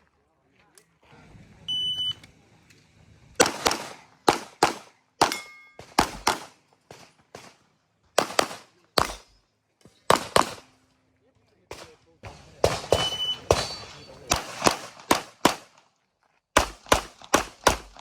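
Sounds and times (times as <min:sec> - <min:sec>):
shot timer beep: 0:01.7 - 0:02.2.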